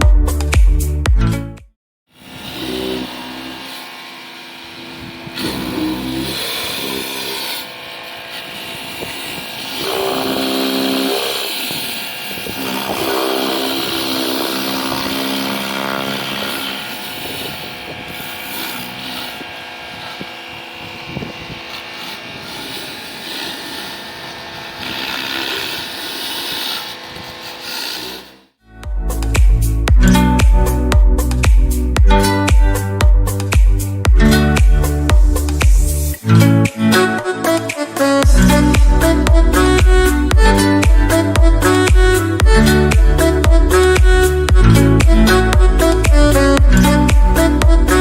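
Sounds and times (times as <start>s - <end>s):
pressure washer pump whining: 2.2s - 28.6s, 38.2s - 48.0s.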